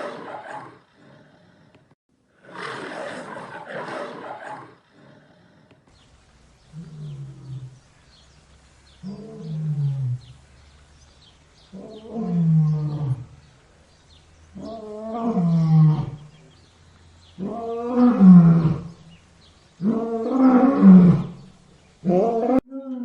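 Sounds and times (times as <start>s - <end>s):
lion roaring: 0.0s - 5.8s, 6.6s - 7.8s, 9.0s - 10.4s, 11.7s - 13.6s, 14.5s - 16.6s, 17.4s - 19.0s, 19.8s - 23.0s.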